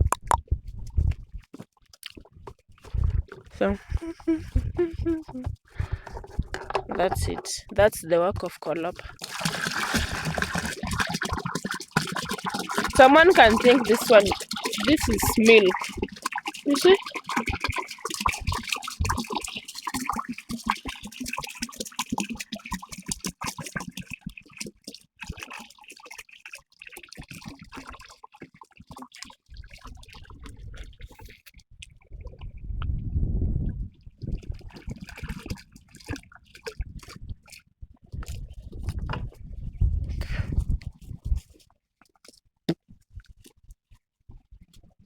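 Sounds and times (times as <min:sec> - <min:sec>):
liquid pouring into container: 0:02.9 - 0:07.8, 0:08.4 - 0:32.6, 0:34.2 - 0:39.4.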